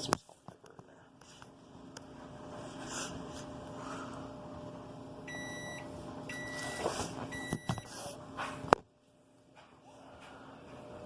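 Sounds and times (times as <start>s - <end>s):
microwave oven humming: 0.0s - 11.0s
electronic beeps: 5.3s - 7.9s.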